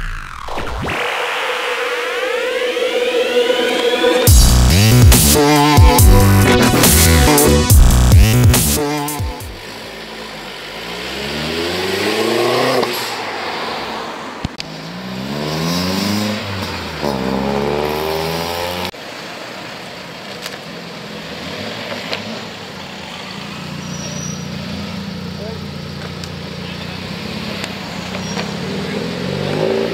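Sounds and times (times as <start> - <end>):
car engine revving: 0.0 - 19.0, 20.5 - 29.9
car engine running steadily: 22.1 - 28.5.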